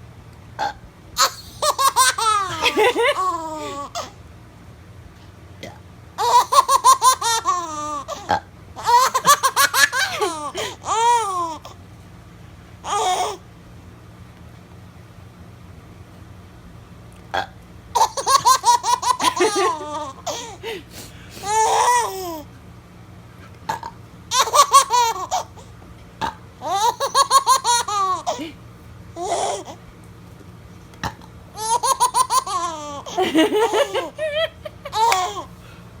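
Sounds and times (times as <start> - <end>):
baby laughing: 1.2 - 4.1, 6.2 - 11.7, 18.0 - 20.8, 21.4 - 22.4, 24.3 - 25.6, 26.6 - 28.6, 29.2 - 29.8, 31.6 - 35.5.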